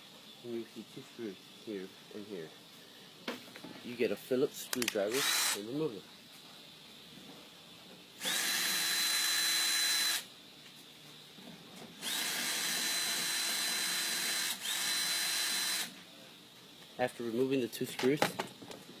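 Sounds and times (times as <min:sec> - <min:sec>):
power drill whirring: 0:05.1 - 0:05.6, 0:08.2 - 0:10.3, 0:12.0 - 0:16.0.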